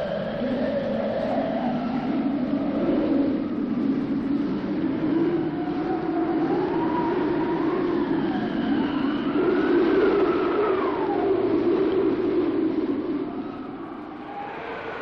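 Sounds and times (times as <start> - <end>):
wind howling and whistling: 0.0 - 15.0.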